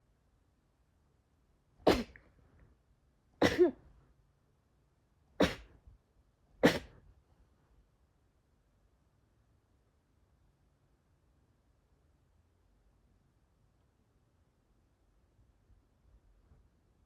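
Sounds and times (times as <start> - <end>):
person sneezing: 1.9 - 2.2, 3.4 - 3.8, 5.4 - 5.8, 6.6 - 7.0.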